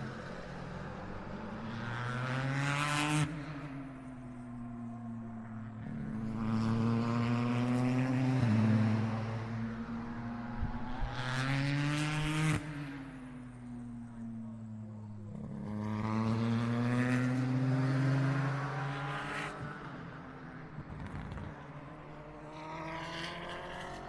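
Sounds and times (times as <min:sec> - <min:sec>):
race car engine revving: 0:13.7 - 0:24.0.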